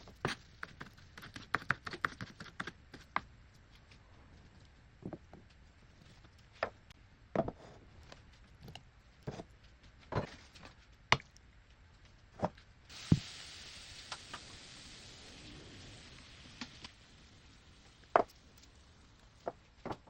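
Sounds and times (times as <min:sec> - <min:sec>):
food sizzling in a pan: 0:12.9 - 0:19.0.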